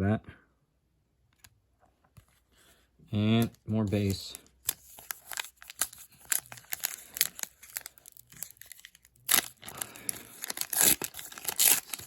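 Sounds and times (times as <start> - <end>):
foil wrapper crinkling: 3.4 - 12.0.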